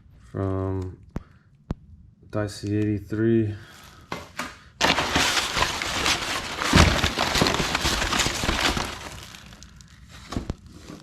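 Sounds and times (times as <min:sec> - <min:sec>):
packaging crackling and rustling: 0:04.8 - 0:11.0.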